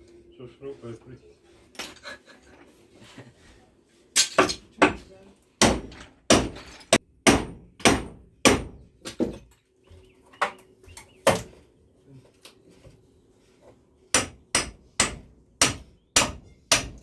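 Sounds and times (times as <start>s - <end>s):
hammer strikes: 5.6s - 9.4s, 14.1s - 17.0s.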